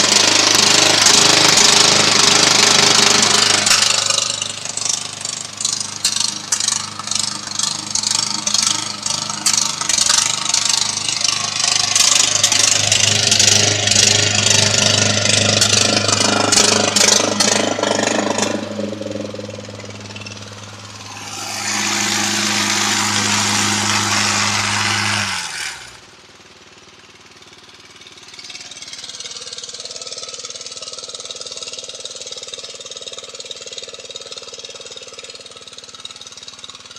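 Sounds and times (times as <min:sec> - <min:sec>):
dense rattle: 0:00.0 - 0:24.8
lawn mower engine running: 0:00.0 - 0:36.9
loud rushing noise: 0:15.2 - 0:26.0.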